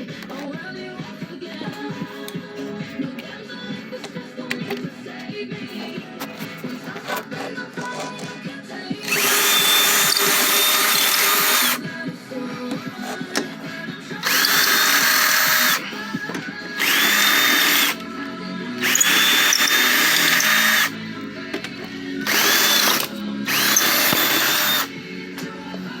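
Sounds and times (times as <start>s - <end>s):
power drill whining: 7.0s - 25.9s.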